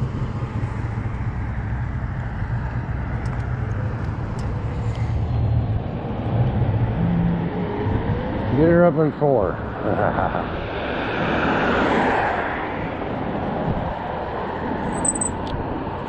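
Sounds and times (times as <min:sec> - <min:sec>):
wind rumble on microphone: 0:09.6 - 0:16.0.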